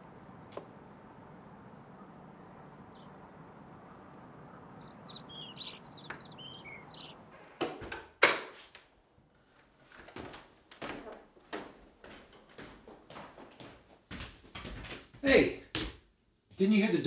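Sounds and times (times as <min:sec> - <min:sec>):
small birds chirping: 0:00.0 - 0:07.6.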